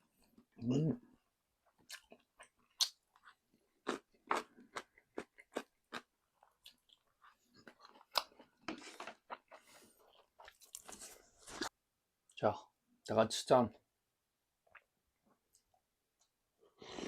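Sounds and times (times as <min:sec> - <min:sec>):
soft chewing: 0:00.2 - 0:11.7.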